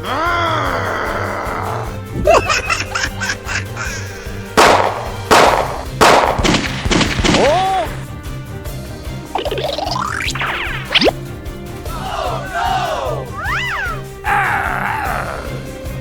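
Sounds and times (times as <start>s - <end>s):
background music: 0.0s - 16.0s
sharp cartoon bangs: 4.6s - 8.0s.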